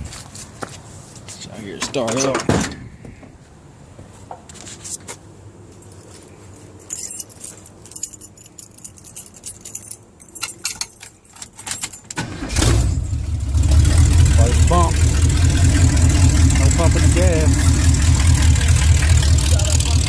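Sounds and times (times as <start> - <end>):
keys jangling on a keyring: 5.8 - 12.2
truck engine starting: 12.2 - 20.0.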